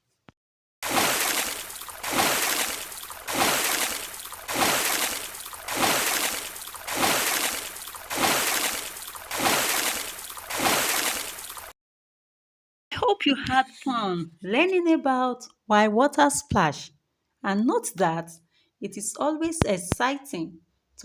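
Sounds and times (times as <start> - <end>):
water splashing: 0.8 - 11.7.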